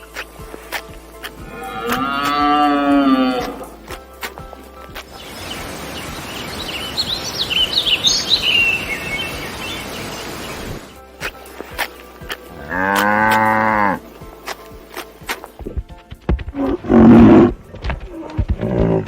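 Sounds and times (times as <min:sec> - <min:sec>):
cow mooing: 0:01.4 - 0:03.8, 0:12.6 - 0:14.0
small birds chirping: 0:04.4 - 0:12.5
outdoor hiss: 0:04.7 - 0:12.5.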